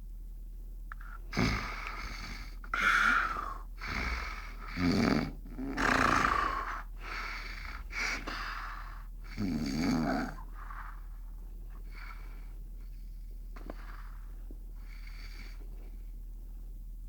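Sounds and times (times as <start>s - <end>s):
breathy hissing breaths: 1.2s - 16.0s
person snoring: 1.3s - 8.0s, 8.7s - 11.0s.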